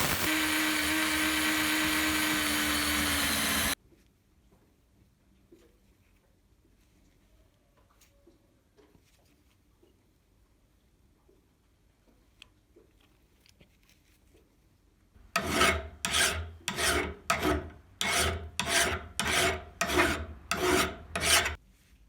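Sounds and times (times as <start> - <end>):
hand filing or sanding strokes: 0.0 - 3.8, 15.4 - 21.6.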